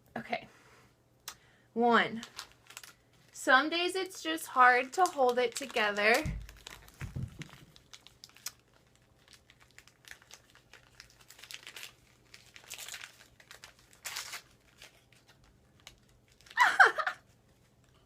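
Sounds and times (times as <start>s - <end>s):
gift wrapping crinkling and tearing: 2.2s - 3.4s, 4.2s - 18.0s.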